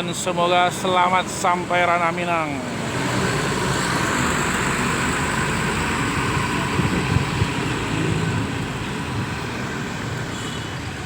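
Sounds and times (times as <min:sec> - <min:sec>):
bus engine rumble: 0:00.0 - 0:11.0
road noise: 0:00.0 - 0:11.0.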